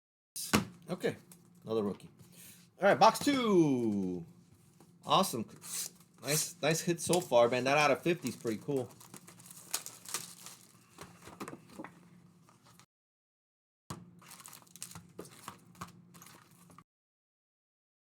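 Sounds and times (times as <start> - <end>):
foil wrappers crinkling and tearing: 5.6 - 11.3, 14.2 - 16.8.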